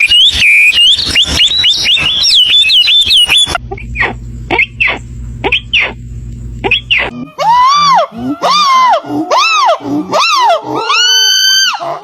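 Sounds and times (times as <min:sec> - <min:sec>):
high whistled bird notes: 0:00.0 - 0:06.0, 0:06.6 - 0:07.2
steady low hum: 0:00.0 - 0:07.4.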